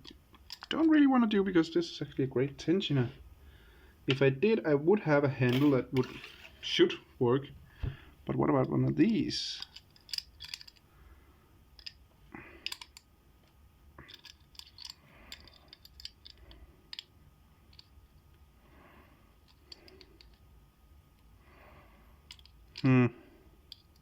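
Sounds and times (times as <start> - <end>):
lock pick clicking and scraping: 12.7 - 13.0, 14.0 - 17.1, 22.3 - 22.8.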